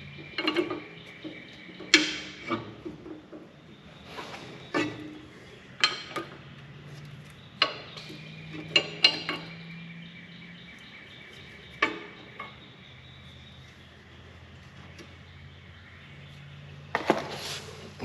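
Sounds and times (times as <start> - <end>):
metal clinks and clanks: 7.5 - 9.9.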